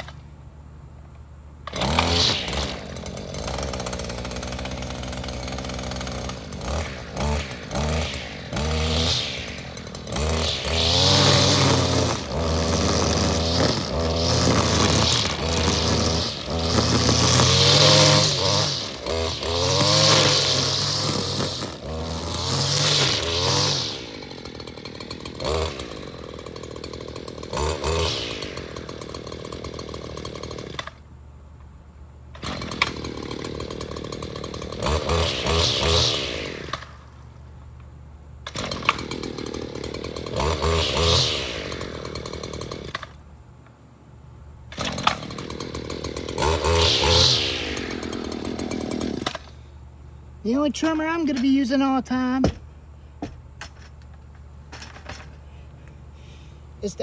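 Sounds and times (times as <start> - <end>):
small two-stroke engine revving: 1.6 - 31.0, 32.3 - 37.2, 38.4 - 43.2, 44.7 - 49.7.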